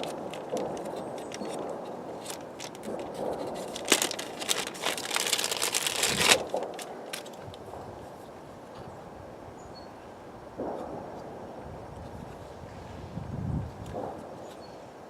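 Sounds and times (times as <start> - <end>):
small plastic clicks: 0.0 - 7.6
plastic parts rustling and crinkling: 0.0 - 7.7.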